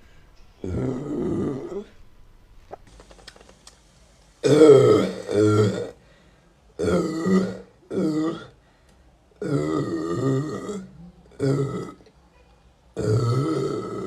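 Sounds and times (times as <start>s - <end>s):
woman burping: 4.4s - 6.0s, 6.8s - 8.6s, 9.4s - 12.1s, 13.0s - 14.0s.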